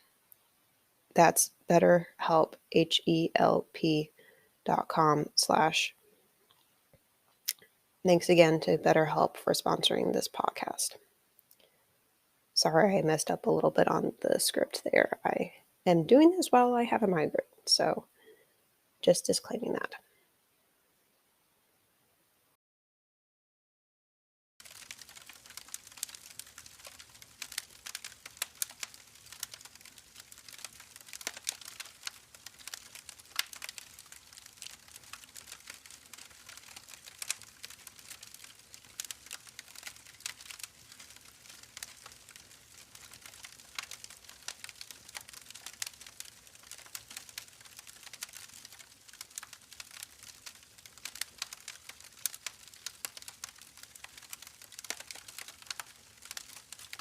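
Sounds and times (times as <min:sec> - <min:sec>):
campfire crackling and popping: 0:24.6 - 0:57.0.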